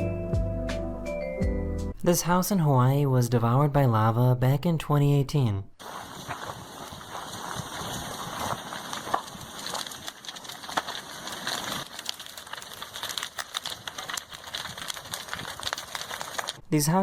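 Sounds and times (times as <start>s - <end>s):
loud cracks: 5.8s - 16.6s
house burning crackling and popping: 5.8s - 17.0s.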